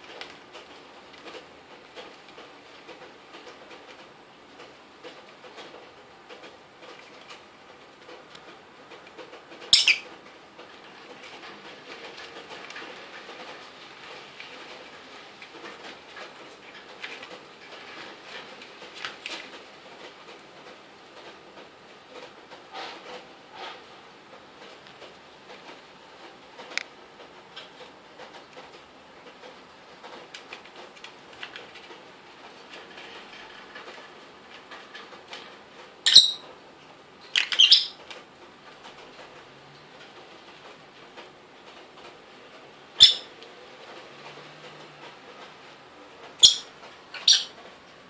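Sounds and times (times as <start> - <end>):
lovebird chirping: 9.7 - 10.1, 36.0 - 36.4, 37.3 - 38.0, 43.0 - 43.3, 46.4 - 47.6.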